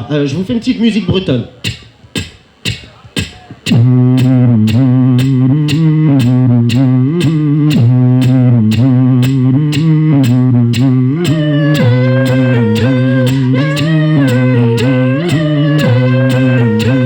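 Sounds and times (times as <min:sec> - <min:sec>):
clicking beat: 0:01.6 - 0:17.0.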